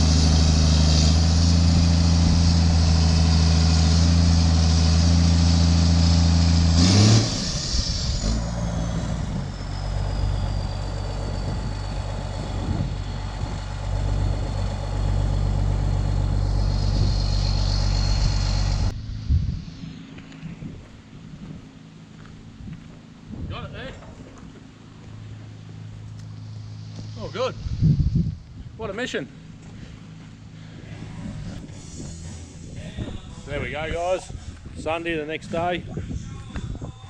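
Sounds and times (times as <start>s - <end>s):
engine running and revving: 0.0s - 23.4s, 24.4s - 28.4s, 30.1s - 32.8s
high whine falling in pitch: 16.0s - 21.8s.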